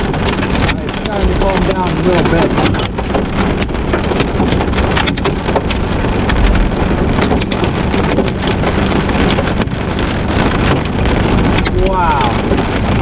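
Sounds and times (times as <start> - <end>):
hailstones striking a vehicle: 0.0 - 13.0
wind: 0.0 - 13.0
heavy rain hissing: 10.0 - 13.0.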